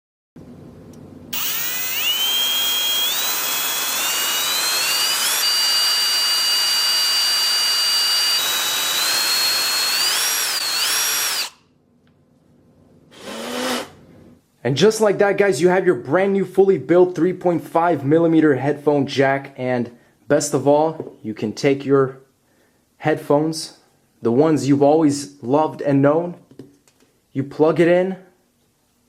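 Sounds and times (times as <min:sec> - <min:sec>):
electric drill whining: 0:01.3 - 0:11.6, 0:13.1 - 0:14.0.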